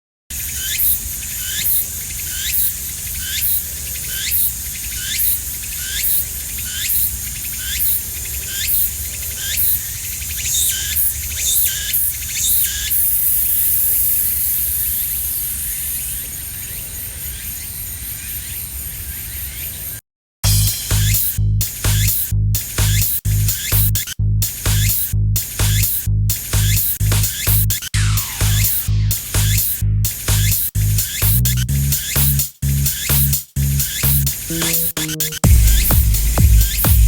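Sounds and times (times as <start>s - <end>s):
cicada chirping: 0.3s - 20.0s
cicada sustained buzz: 0.3s - 34.5s.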